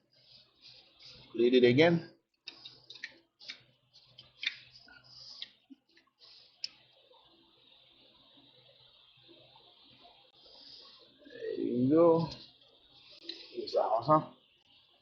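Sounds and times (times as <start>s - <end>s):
faint steady hiss: 0.0s - 15.0s.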